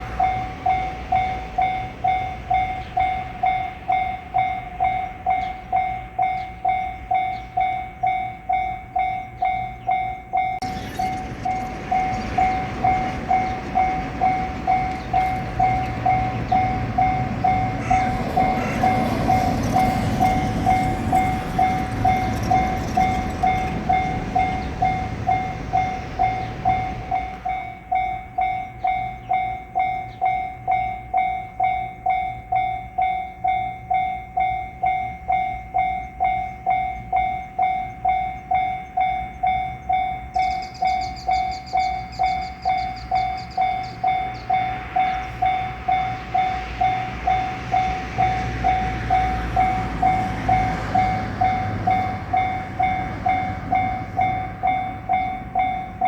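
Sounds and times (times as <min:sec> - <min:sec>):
diesel railcar passing: 0:00.0 - 0:56.0
level crossing warning bell ringing: 0:00.0 - 0:56.0
train wheel clicks over rail joints: 0:19.0 - 0:24.6.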